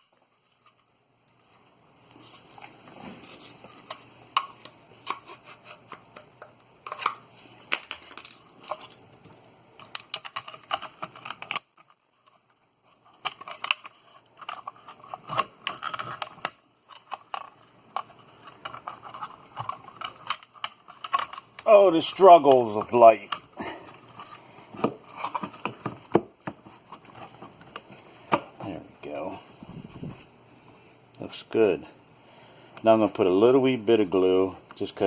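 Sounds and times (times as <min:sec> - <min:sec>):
cable rustling and scraping in box: 0:10.2 - 0:21.6, 0:22.7 - 0:28.1.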